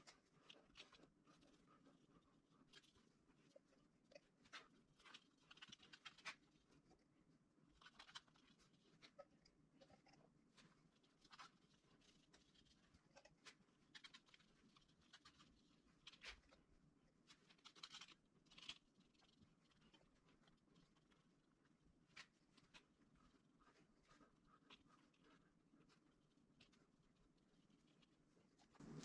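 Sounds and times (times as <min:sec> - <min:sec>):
brush scratching strokes: 0:27.9 - 0:29.0.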